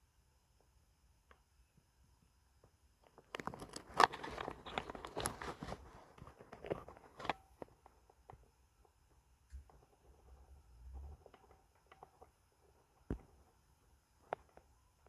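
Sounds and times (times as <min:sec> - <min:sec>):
crunching rustling clicks: 0:03.0 - 0:07.8.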